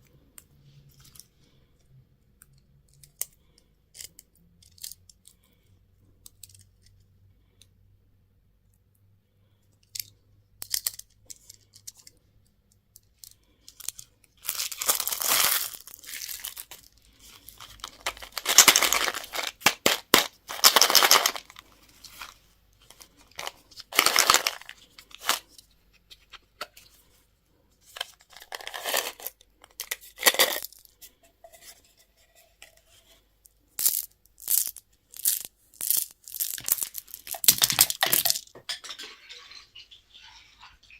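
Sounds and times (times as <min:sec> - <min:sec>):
packaging torn and crinkled: 0:14.4 - 0:16.8, 0:17.4 - 0:22.3, 0:23.3 - 0:25.4.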